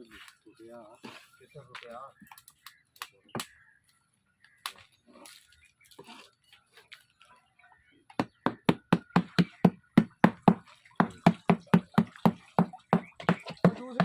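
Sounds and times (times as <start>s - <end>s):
rapid even knocking: 8.2s - 14.0s.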